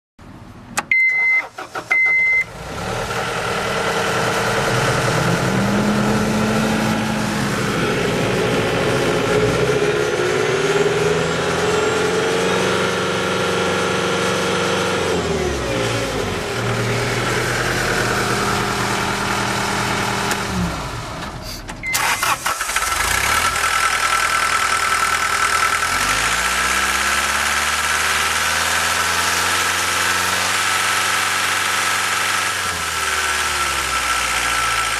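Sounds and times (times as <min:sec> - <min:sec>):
short warning beeps: 0:00.9 - 0:02.5
diesel engine revving: 0:01.5 - 0:34.9.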